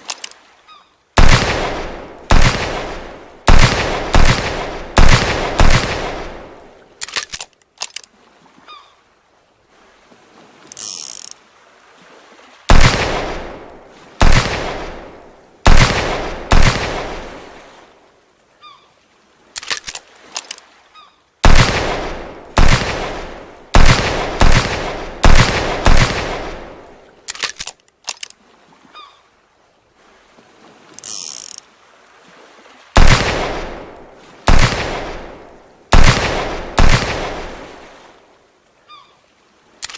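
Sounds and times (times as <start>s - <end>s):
revolver gunshots echoing: 1.2s - 6.6s, 12.7s - 17.3s, 21.4s - 26.8s, 33.0s - 37.8s.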